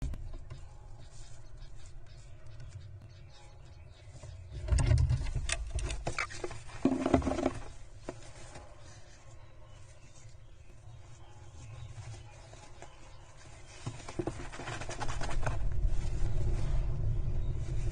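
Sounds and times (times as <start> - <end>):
birds scratching in nest box: 4.2 - 16.4
low steady rumble: 15.1 - 17.9.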